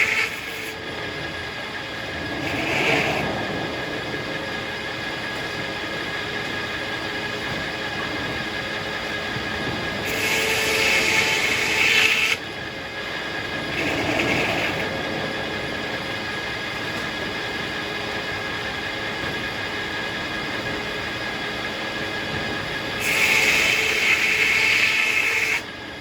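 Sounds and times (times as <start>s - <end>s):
harsh sawing noise: 0.0s - 0.8s, 9.6s - 12.4s, 13.3s - 15.0s, 23.0s - 25.7s
circular sawmill running: 0.0s - 26.0s.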